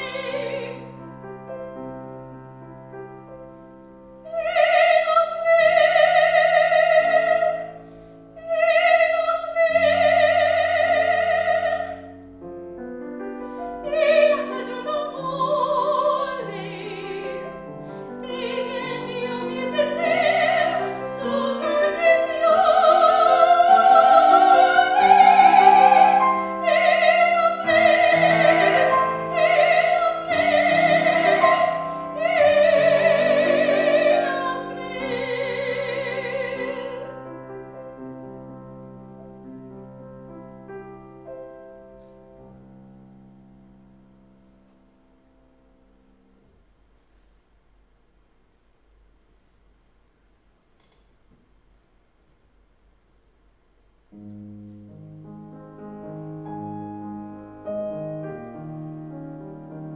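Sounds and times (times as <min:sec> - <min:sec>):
soprano singing: 0:00.0 - 0:43.2
piano accompaniment: 0:00.0 - 0:46.5, 0:54.1 - 0:59.9.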